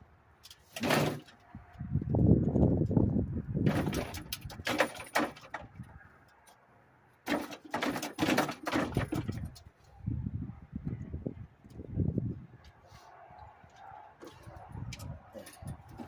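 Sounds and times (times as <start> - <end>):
hand tools clanking on metal: 3.7 - 6.5, 7.2 - 9.7, 14.2 - 16.0.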